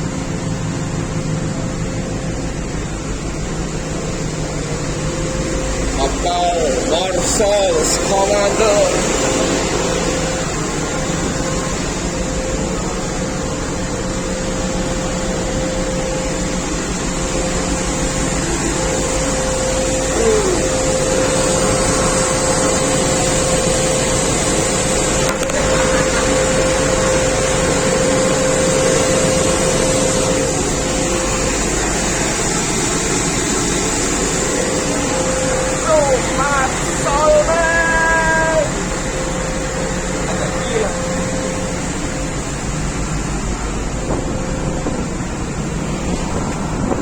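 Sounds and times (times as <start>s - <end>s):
mechanical hum: 0.0s - 47.0s
strong wind blowing: 43.8s - 47.0s.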